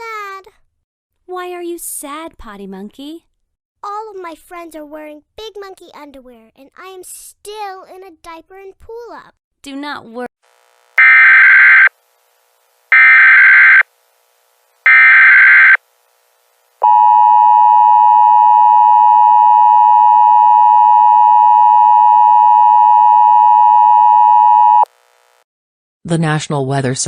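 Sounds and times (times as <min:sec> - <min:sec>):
data burst tones: 0:11.0 - 0:11.9, 0:12.9 - 0:13.8, 0:14.9 - 0:15.8
two-tone alert signal: 0:11.0 - 0:11.9, 0:13.0 - 0:13.8, 0:14.9 - 0:15.8.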